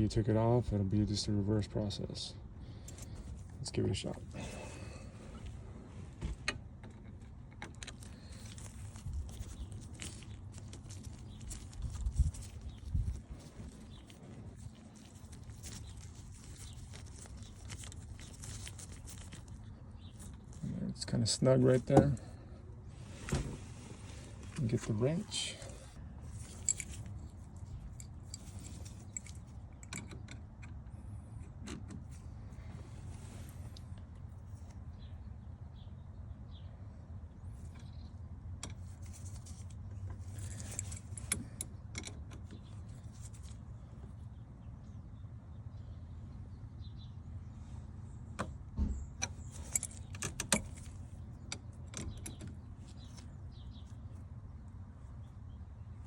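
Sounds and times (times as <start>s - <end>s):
low steady hum: 0.0s - 56.0s
metallic clicks and jingling: 26.2s - 30.8s, 38.6s - 43.6s, 49.2s - 53.9s.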